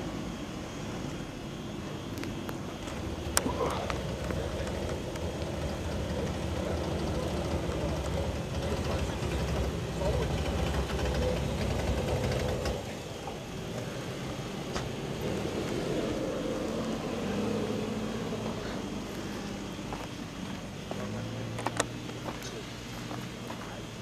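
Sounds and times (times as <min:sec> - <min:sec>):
vehicle engine running: 0:00.0 - 0:24.0.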